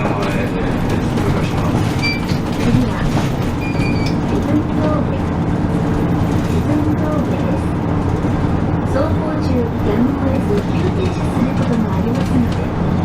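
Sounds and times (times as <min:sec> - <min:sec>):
bus engine and road rumble: 0:00.0 - 0:13.0
brief high squeaks: 0:03.6 - 0:04.2.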